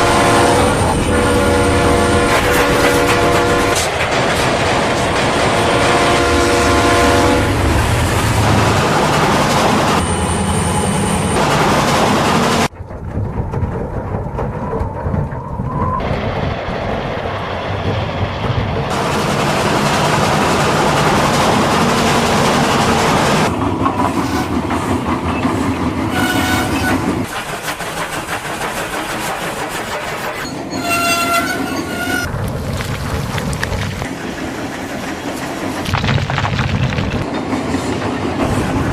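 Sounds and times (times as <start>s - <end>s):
train whistle: 0.0s - 3.8s, 5.6s - 7.5s, 26.1s - 27.1s, 30.8s - 32.3s
train wheels rumbling and clattering: 0.0s - 38.9s.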